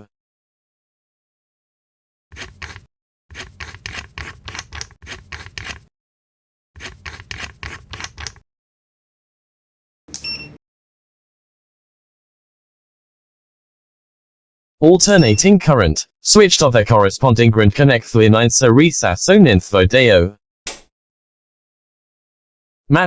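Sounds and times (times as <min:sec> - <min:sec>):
scratchy clicking of test probes: 0:02.4 - 0:05.9, 0:06.8 - 0:08.4
high electronic beep: 0:10.2 - 0:10.6, 0:15.1 - 0:15.6.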